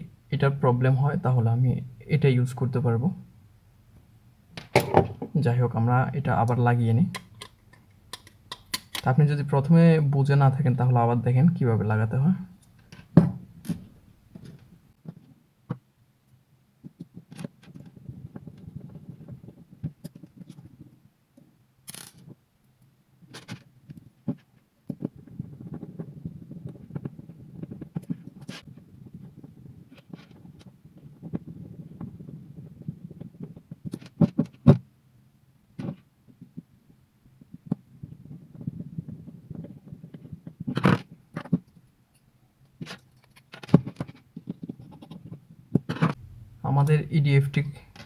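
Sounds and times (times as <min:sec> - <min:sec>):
plastic and metal parts clicking: 0:07.1 - 0:09.1.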